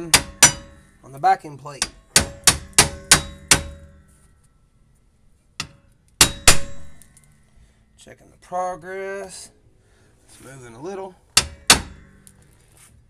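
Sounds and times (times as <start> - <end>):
hammer striking metal: 0.0 - 1.0, 1.8 - 4.0, 5.6 - 7.1, 11.4 - 12.2.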